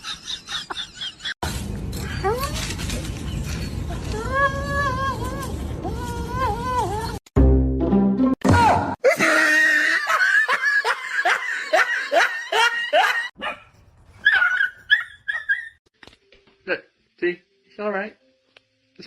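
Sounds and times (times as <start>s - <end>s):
dog yelping: 13.4s - 15.8s.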